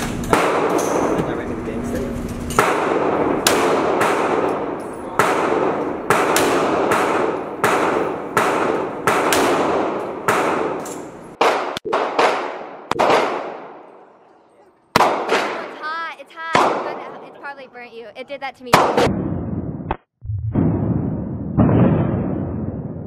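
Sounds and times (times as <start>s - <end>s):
echoing gunshots: 0.3s - 1.3s, 2.6s - 14.1s, 14.9s - 15.8s, 16.5s - 17.3s, 18.7s - 19.9s, 20.5s - 23.0s.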